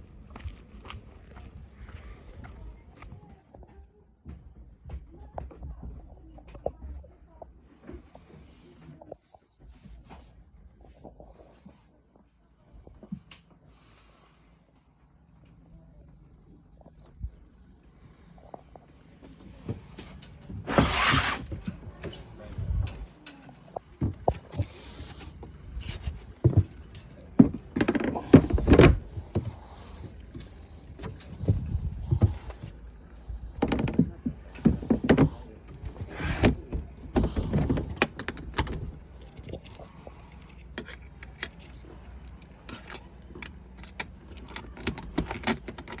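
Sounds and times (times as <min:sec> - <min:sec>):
knocking and clattering: 0:33.5 - 0:39.8.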